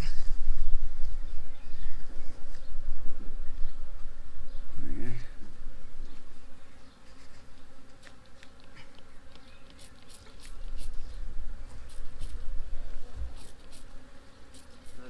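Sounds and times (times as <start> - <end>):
low rumble on microphone: 0.0 - 6.6
bees buzzing: 0.0 - 15.0
bees zipping past microphone: 6.9 - 15.0.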